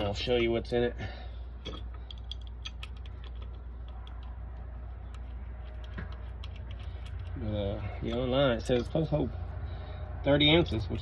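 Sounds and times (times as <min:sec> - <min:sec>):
steady low hum: 0:00.0 - 0:11.0
metal parts and tools clicking: 0:01.6 - 0:09.2.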